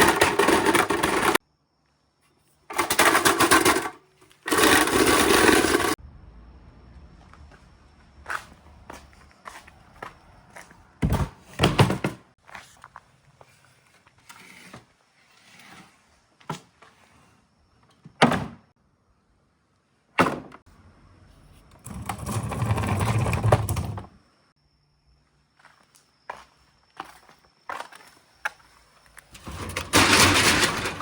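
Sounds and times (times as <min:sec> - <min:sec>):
marbles rolling rattle: 0:04.5 - 0:06.0.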